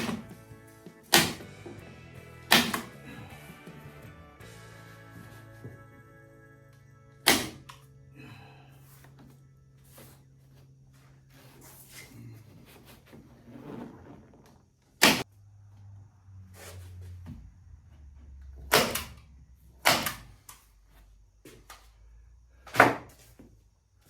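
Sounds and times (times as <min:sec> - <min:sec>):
staple gun firing into wood: 0:01.1 - 0:01.4, 0:02.5 - 0:02.9, 0:07.2 - 0:07.8, 0:18.7 - 0:19.2, 0:19.8 - 0:20.3.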